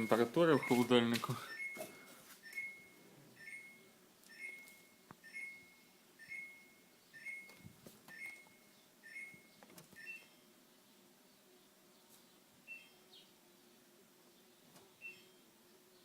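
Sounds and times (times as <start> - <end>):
refrigerator alarm beeping: 0.0 - 10.5, 15.0 - 15.4.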